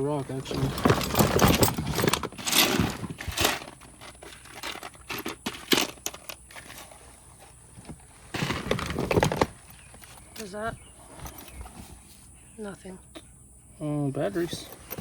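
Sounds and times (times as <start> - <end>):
rocks clicking and knocking: 0.0 - 6.9
rustling: 0.2 - 12.4.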